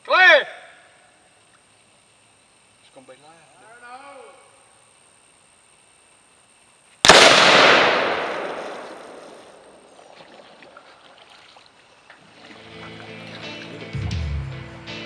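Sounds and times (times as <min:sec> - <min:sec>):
explosion blast with echo: 0:07.1 - 0:09.8.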